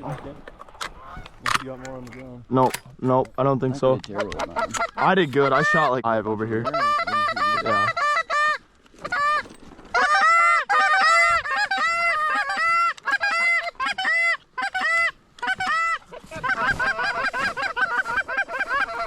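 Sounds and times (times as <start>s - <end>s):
geese honking: 4.1s - 19.0s.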